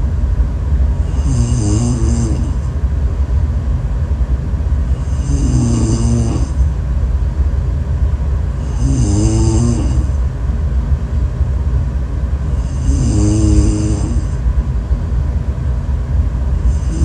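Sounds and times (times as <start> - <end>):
person snoring: 1.0 - 2.7, 5.0 - 6.6, 8.6 - 10.2, 12.6 - 14.4, 16.6 - 17.0.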